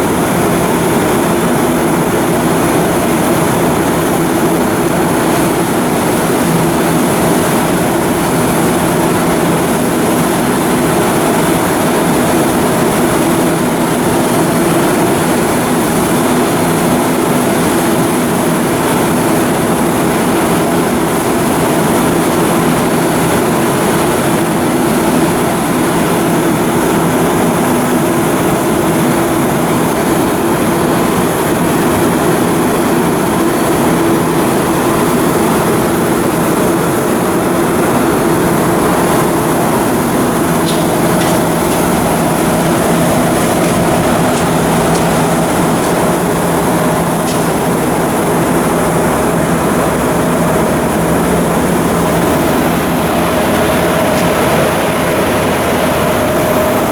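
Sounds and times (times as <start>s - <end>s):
heavy machinery drone: 0.0s - 56.9s
low hums: 38.1s - 56.9s.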